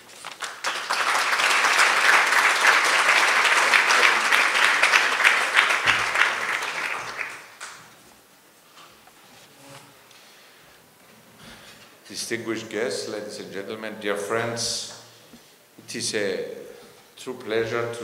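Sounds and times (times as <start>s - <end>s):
audience applauding: 0.0s - 7.9s.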